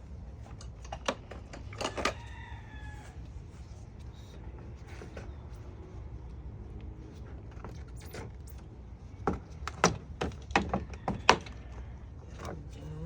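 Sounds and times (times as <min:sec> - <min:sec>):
low steady hum: 0:11.7 - 0:13.0.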